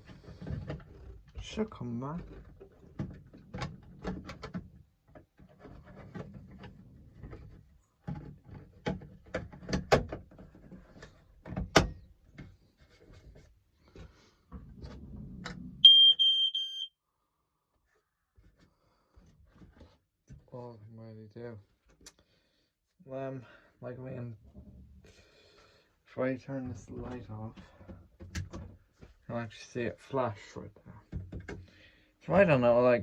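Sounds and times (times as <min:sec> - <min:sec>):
smoke alarm beep: 0:15.8 - 0:16.9
smoke alarm being handled: 0:15.8 - 0:16.9.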